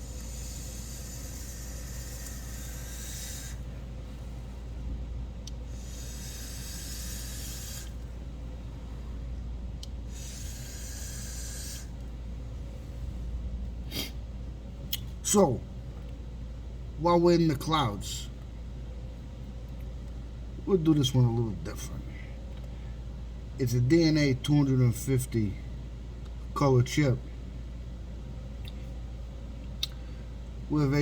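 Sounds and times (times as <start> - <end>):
vape coils sizzling: 0.0 - 3.7, 5.5 - 8.1, 9.8 - 12.0.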